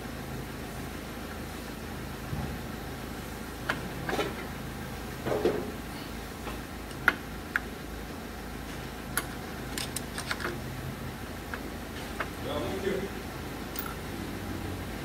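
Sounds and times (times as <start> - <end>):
metal parts clicking: 9.7 - 10.6.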